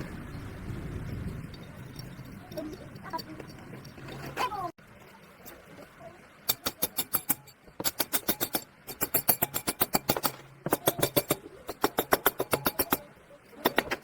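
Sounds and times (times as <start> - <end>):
hand tool clicking rapidly: 6.5 - 14.0.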